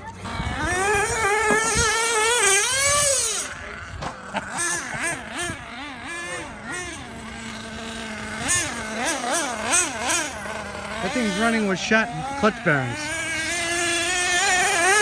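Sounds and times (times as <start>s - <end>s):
rc car engine revving: 0.0s - 15.0s.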